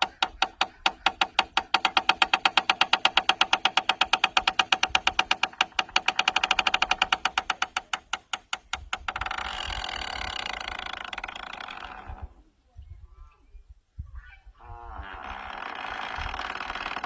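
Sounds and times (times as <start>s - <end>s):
fast pitched ticks: 0.0s - 9.8s.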